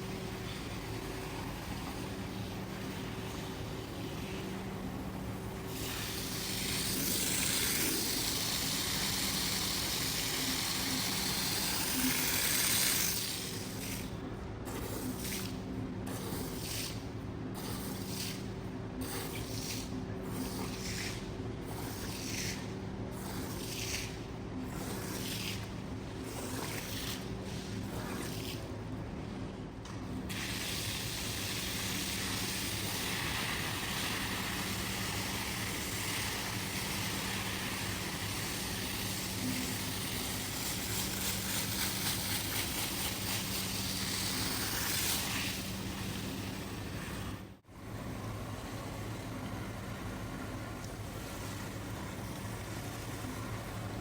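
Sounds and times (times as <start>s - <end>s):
steady motor hum: 0.0s - 54.0s
water spraying under pressure: 5.8s - 14.0s, 30.3s - 47.3s.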